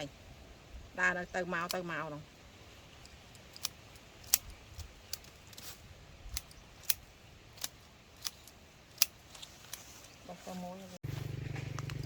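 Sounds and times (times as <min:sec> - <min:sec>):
blade snipping plant stems: 0:02.9 - 0:09.9.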